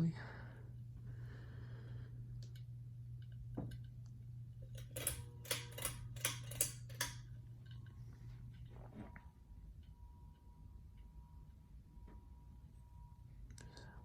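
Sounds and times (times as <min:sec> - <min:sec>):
ceiling fan humming: 0:00.0 - 0:14.0
fan rattling clicks: 0:04.6 - 0:07.9.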